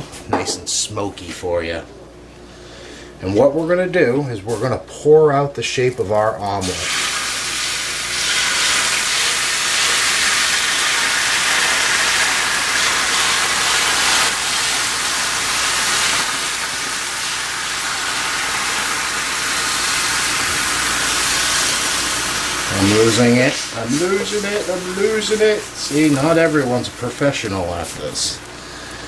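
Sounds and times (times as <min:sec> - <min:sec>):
eggs sizzling on a griddle: 0:06.8 - 0:29.0.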